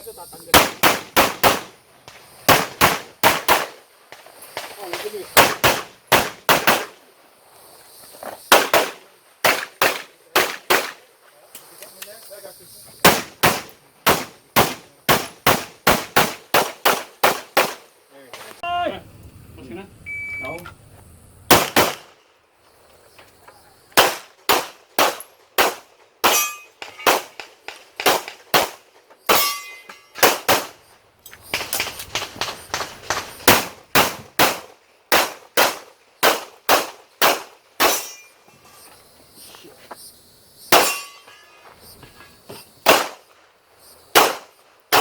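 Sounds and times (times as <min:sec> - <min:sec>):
pistol shots: 0:00.5 - 0:01.8, 0:02.5 - 0:03.8, 0:05.4 - 0:07.0, 0:08.5 - 0:11.0, 0:13.0 - 0:17.9, 0:21.5 - 0:22.2, 0:24.0 - 0:30.8, 0:31.5 - 0:38.3, 0:40.7 - 0:41.2, 0:42.8 - 0:43.3, 0:44.1 - 0:45.0
steel targets clanging: 0:26.2 - 0:27.5, 0:29.3 - 0:30.3, 0:37.8 - 0:38.9, 0:40.7 - 0:41.6.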